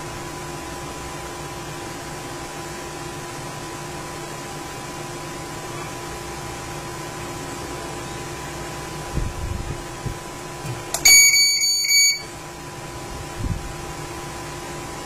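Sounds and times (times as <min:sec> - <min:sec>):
hiss and electrical hum: 0:00.0 - 0:15.0
electronic alarm panel beep: 0:11.0 - 0:12.4.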